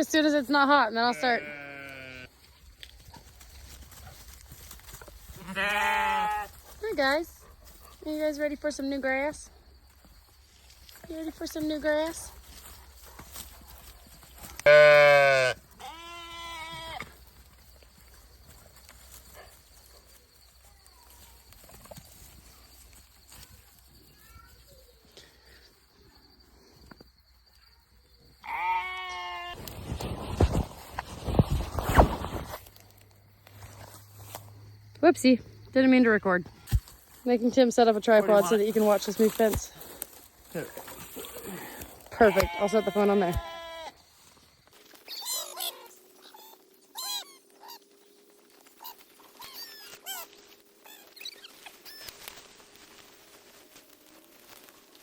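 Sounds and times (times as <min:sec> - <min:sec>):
goat or sheep bleat: 0:01.0 - 0:02.3, 0:05.4 - 0:06.5, 0:14.6 - 0:17.0, 0:28.4 - 0:29.6, 0:42.2 - 0:43.9.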